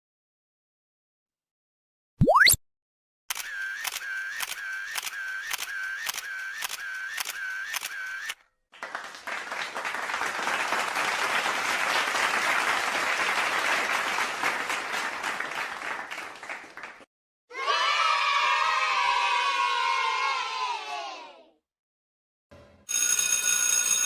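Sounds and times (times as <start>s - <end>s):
camera shutter clicks: 3.3s - 8.4s
applause: 8.7s - 17.1s.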